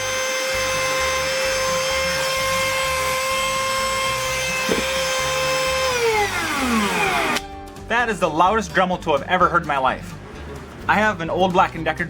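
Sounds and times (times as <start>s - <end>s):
rotary tool high-pitched whine: 0.0s - 7.4s.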